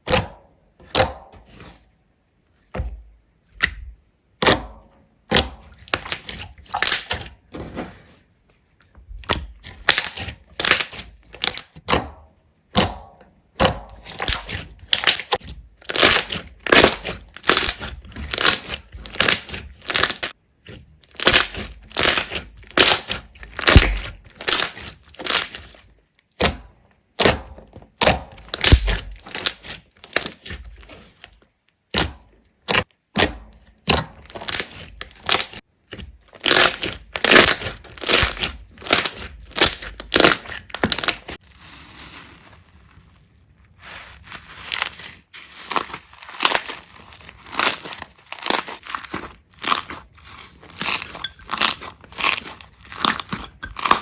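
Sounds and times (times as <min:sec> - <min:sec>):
slime crackling and popping: 0:05.3 - 0:07.3, 0:09.3 - 0:12.0, 0:12.7 - 0:20.4, 0:21.0 - 0:25.8, 0:27.2 - 0:30.7, 0:31.9 - 0:35.6, 0:36.2 - 0:41.4, 0:44.7 - 0:54.0.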